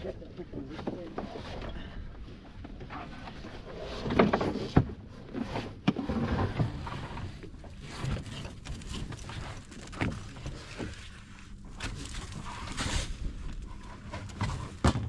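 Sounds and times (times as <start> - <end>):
sharp knocks and thuds: 14.4 - 15.0.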